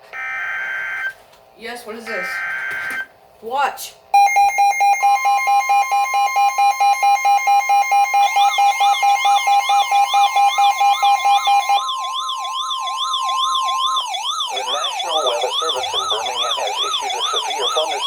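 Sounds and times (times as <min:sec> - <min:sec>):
steady warning alarm tone: 0:00.0 - 0:01.2, 0:02.0 - 0:03.1, 0:04.2 - 0:18.0
fast pulsing beep: 0:04.2 - 0:12.1
rising and falling siren warble: 0:04.2 - 0:18.0.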